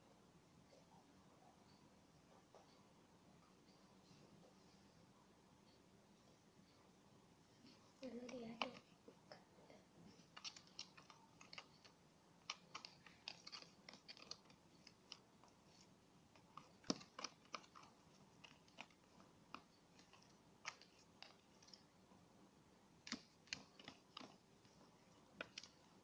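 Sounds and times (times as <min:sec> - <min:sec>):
utensil stirring slime: 0:07.7 - 0:09.1, 0:10.0 - 0:26.0.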